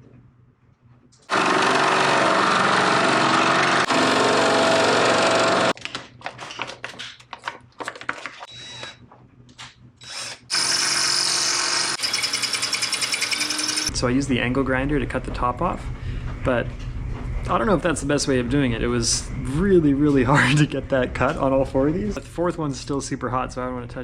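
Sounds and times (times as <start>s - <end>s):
electric power tool on steel: 1.3s - 5.7s, 10.0s - 13.9s.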